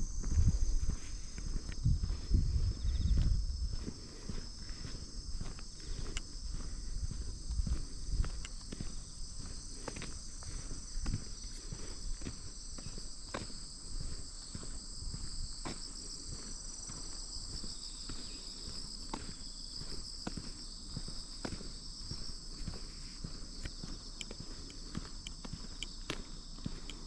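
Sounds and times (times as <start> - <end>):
footsteps crunching: 0.0 - 27.0.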